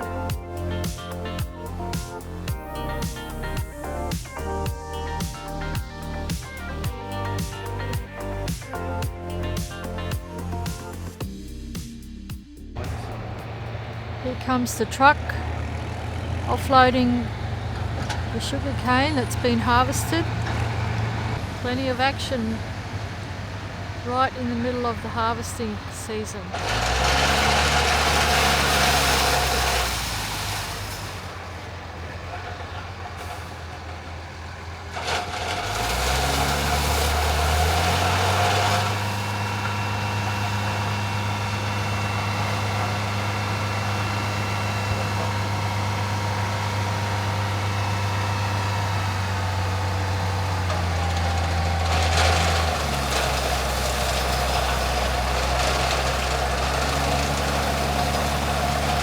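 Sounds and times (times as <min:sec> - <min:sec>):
diesel truck engine running: 0:00.0 - 0:59.0
loud rushing noise: 0:00.8 - 0:21.6.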